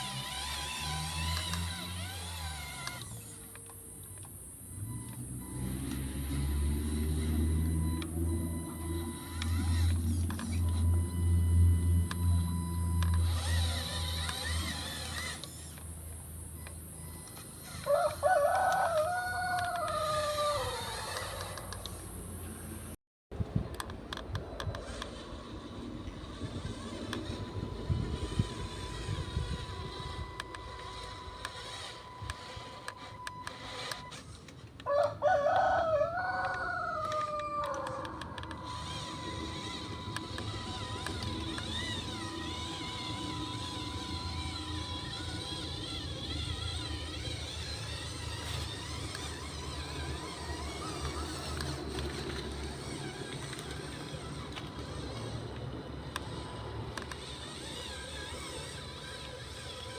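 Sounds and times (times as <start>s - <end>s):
rooster crowing: 17.7s - 21.4s, 34.8s - 38.4s.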